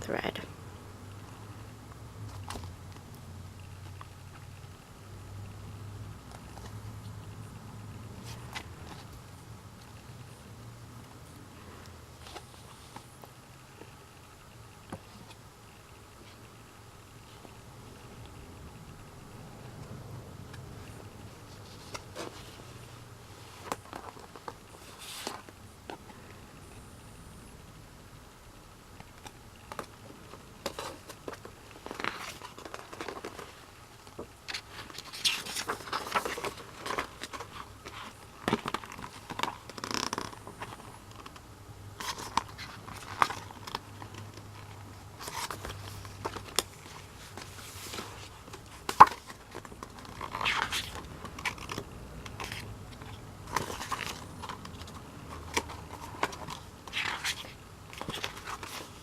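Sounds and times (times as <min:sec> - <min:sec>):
packaging crinkling and tearing: 0:47.9 - 0:59.0.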